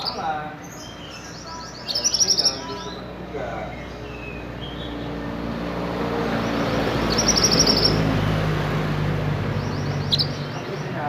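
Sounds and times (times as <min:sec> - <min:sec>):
bird trill: 0:00.0 - 0:05.6, 0:06.2 - 0:08.5, 0:09.3 - 0:11.0
vehicle passing by: 0:00.0 - 0:11.0.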